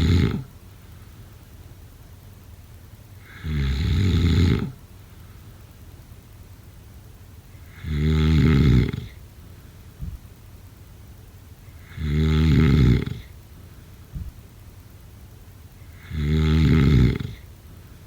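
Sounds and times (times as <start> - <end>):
person snoring: 0.0 - 0.5, 7.7 - 9.2, 11.8 - 13.3, 16.0 - 17.4.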